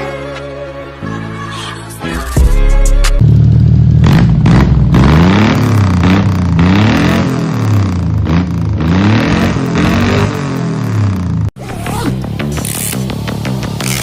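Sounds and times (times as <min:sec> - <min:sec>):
engine revving: 0:03.2 - 0:14.0.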